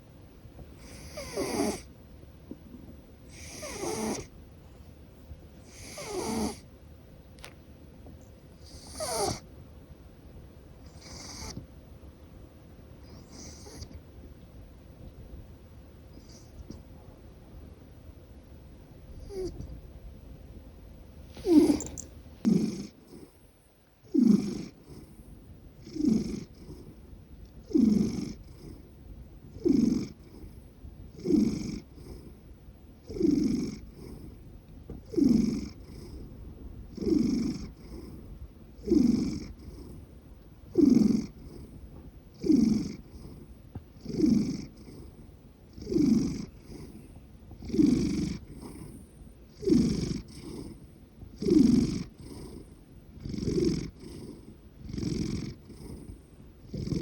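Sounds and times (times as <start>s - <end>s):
cat purring: 0.8s - 1.9s, 2.5s - 4.3s, 5.6s - 6.6s, 8.6s - 9.4s, 10.8s - 11.7s, 13.1s - 14.0s, 16.1s - 16.9s, 19.1s - 19.8s, 21.4s - 27.0s, 27.6s - 28.9s, 29.5s - 32.4s, 33.0s - 34.4s, 35.0s - 40.1s, 40.7s - 57.0s
cat snoring: 0.8s - 1.9s, 3.3s - 4.3s, 5.6s - 6.6s, 8.6s - 9.4s, 10.8s - 11.6s, 13.0s - 14.0s, 16.1s - 16.7s, 19.2s - 19.7s, 21.4s - 23.4s, 24.0s - 27.0s, 27.6s - 28.9s, 29.5s - 32.4s, 33.0s - 34.4s, 35.0s - 36.3s, 36.9s - 38.2s, 38.8s - 40.0s, 40.7s - 57.0s.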